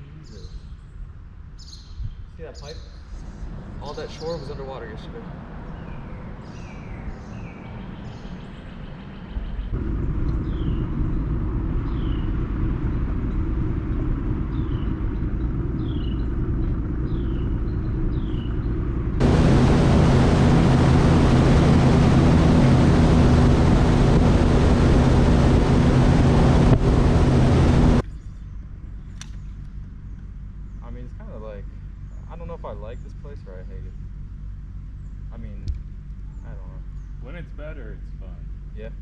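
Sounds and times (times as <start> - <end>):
outboard motor rumbling: 2.4 - 39.0
rushing wind and water: 19.2 - 28.0.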